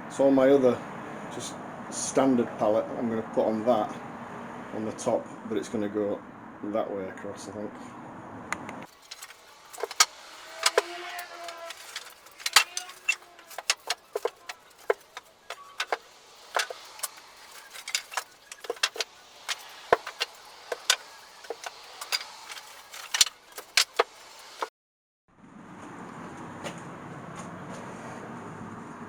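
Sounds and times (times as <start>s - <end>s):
wooden boards knocking together: 8.9s - 24.7s.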